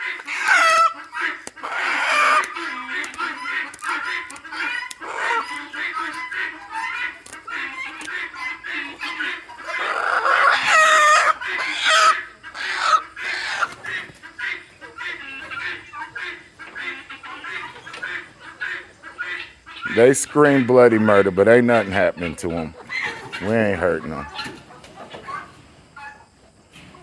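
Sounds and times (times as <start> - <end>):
chicken screaming: 0.0 - 21.3
chickens squawking and clucking: 0.0 - 27.0.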